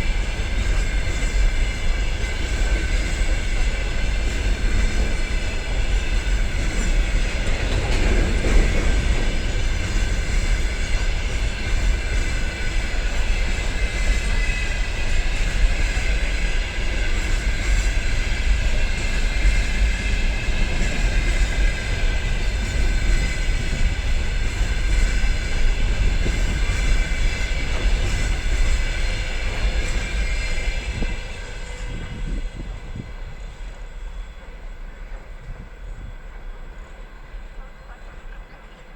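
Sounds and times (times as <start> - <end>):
train wheels clattering over rails: 0.0 - 38.9.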